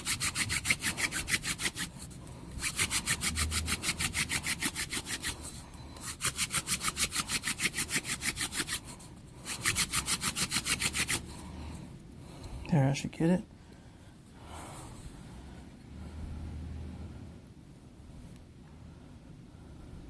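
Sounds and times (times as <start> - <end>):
rasping wood-on-wood rubbing: 0.0 - 2.0, 2.6 - 11.2.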